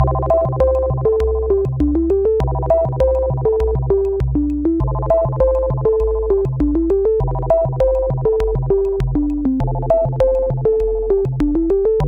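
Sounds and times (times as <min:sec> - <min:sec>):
electronic synthesizer music: 0:00.0 - 0:12.0.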